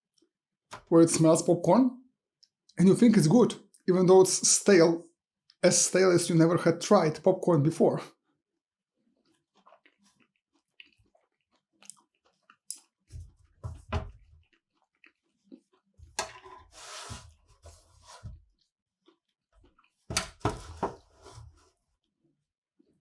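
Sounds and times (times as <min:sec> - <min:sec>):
person chewing food: 0:08.2 - 0:16.7, 0:18.4 - 0:20.1, 0:22.8 - 0:23.0.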